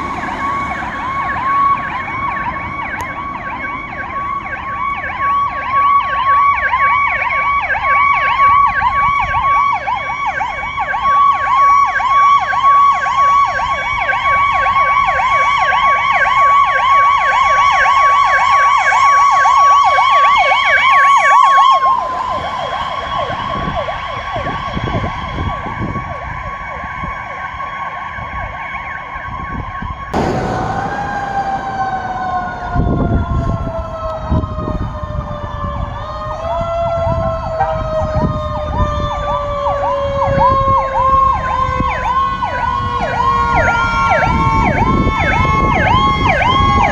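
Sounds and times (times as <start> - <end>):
steady siren tone: 0.0 - 29.5, 30.2 - 46.9
siren winding down: 30.2 - 36.9.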